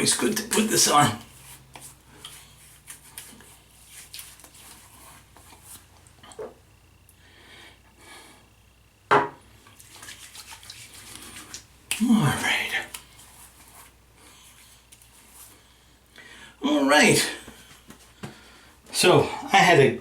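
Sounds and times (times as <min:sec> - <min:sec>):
soft rubbing: 0:01.1 - 0:06.1, 0:09.8 - 0:15.7.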